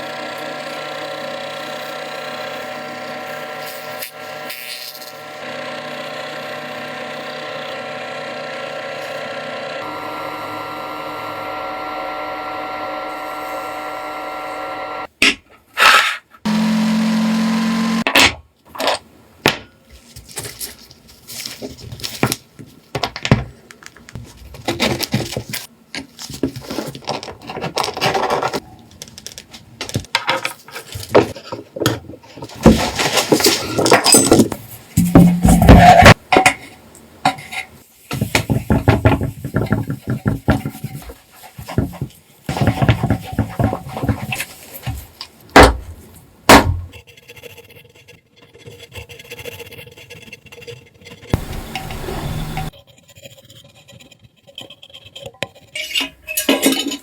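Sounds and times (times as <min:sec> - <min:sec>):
electric power tool running: 0:00.0 - 0:15.1, 0:16.5 - 0:18.1, 0:51.4 - 0:52.7
knocks and clinks on metal parts: 0:33.6 - 0:36.6
short low hum: 0:51.4 - 0:52.7.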